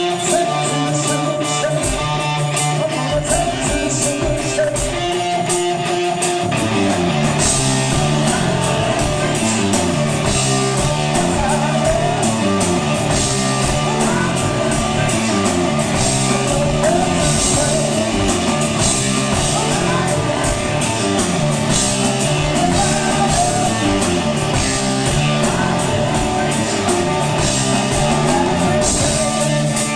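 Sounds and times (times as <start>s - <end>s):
rock band guitar: 0.0s - 29.9s
steady drum beat: 0.0s - 29.9s
stepping bass line: 6.5s - 29.9s.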